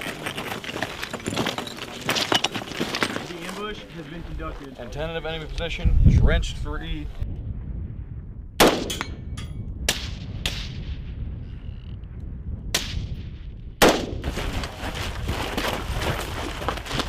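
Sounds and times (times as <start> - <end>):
steady low rumble: 3.9 - 16.9
gunshots: 8.6 - 9.2, 12.7 - 14.3.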